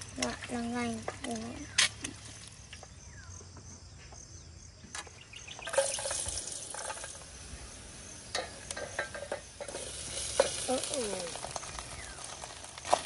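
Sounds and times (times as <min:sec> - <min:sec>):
potatoes sizzling in oil: 0:05.4 - 0:13.0.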